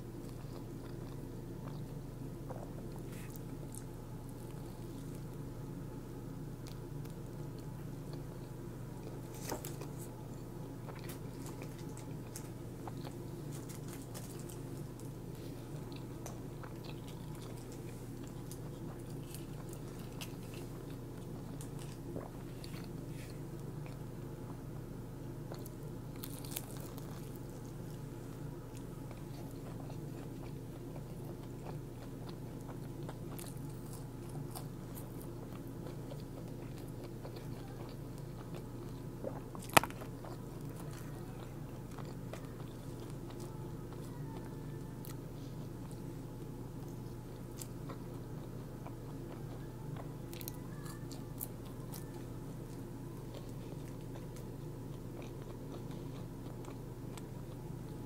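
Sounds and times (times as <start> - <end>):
person chewing food: 0.2 - 5.5, 6.6 - 24.6, 25.4 - 58.0
crisp crunching: 10.8 - 24.0, 25.5 - 28.0.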